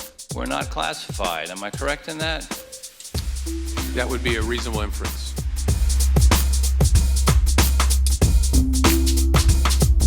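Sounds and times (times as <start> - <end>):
electronic beat with heavy bass: 0.0 - 10.0
held synth chord: 3.4 - 4.7.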